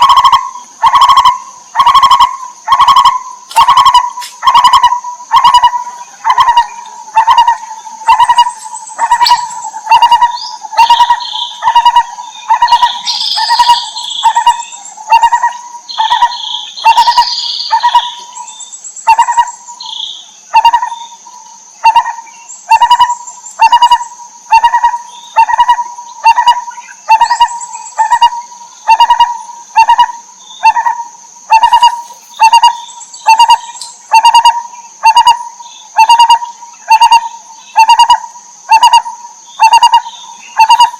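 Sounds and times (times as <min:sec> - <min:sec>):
barbet calling hollow notes: 0:00.0 - 0:18.3, 0:21.8 - 0:40.9
higher bird chirps: 0:00.0 - 0:40.9.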